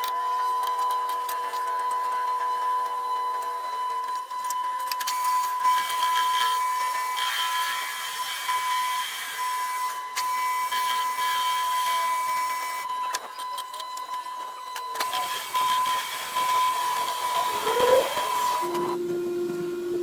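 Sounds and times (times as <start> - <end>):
metal lathe cutting: 5.8 - 12.8, 15.0 - 20.0.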